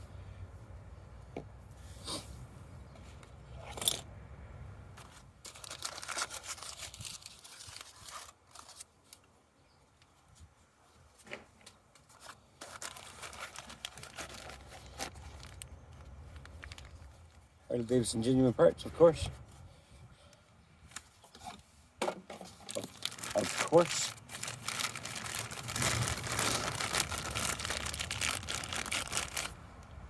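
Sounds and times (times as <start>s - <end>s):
packaging tearing and crinkling: 5.4s - 9.2s, 12.6s - 17.2s, 22.6s - 29.6s.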